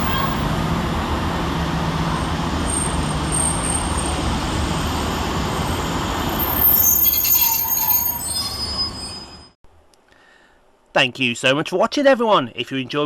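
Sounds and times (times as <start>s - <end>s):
train engine hum and rumble: 0.0s - 9.6s
high-pitched metallic squeal: 2.7s - 4.2s, 5.5s - 9.6s.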